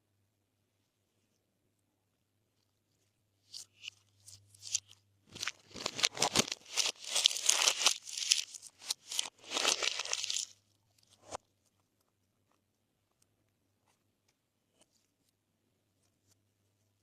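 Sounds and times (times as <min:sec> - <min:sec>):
slime crackling and popping: 0:04.6 - 0:10.6.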